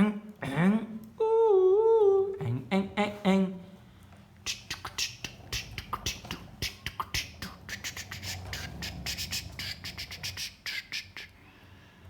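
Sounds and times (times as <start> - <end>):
faint low hum: 0.0 - 12.0
person making clicking mouth sounds: 4.4 - 11.4.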